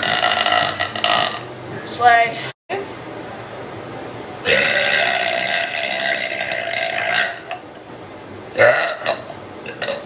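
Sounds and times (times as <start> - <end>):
woman burping: 0.0 - 1.5, 4.5 - 7.6, 8.6 - 10.0.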